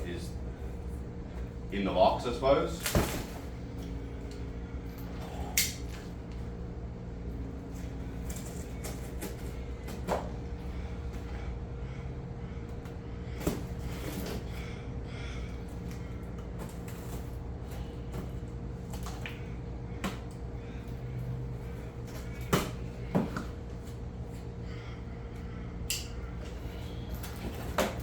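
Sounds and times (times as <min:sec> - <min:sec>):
background hum: 0:00.0 - 0:28.0
cardboard box knocks and bumps: 0:02.8 - 0:03.5.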